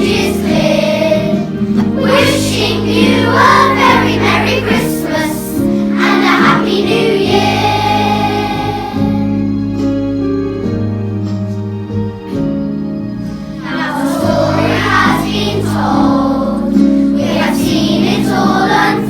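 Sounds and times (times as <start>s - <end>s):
children's choir singing: 0.0s - 9.4s, 13.6s - 19.0s
instrumental accompaniment: 0.0s - 19.0s.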